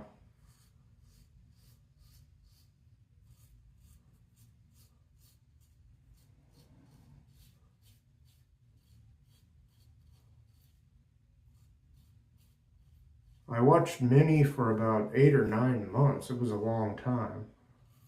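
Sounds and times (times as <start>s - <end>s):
razor scraping stubble: 0.4s - 13.5s.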